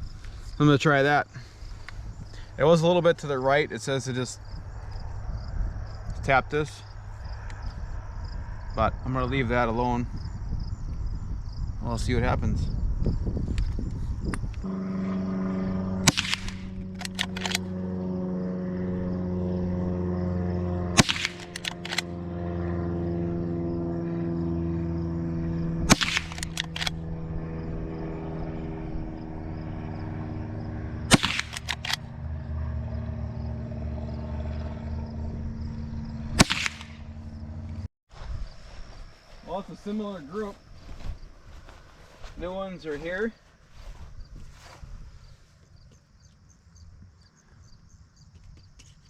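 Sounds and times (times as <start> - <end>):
rifle shots: 15.8 - 17.7, 20.9 - 22.2, 25.8 - 27.0, 31.1 - 32.1, 36.4 - 37.2
rifle lever metallic clicks: 16.1 - 17.6, 21.0 - 22.1, 25.9 - 27.0, 31.2 - 32.0.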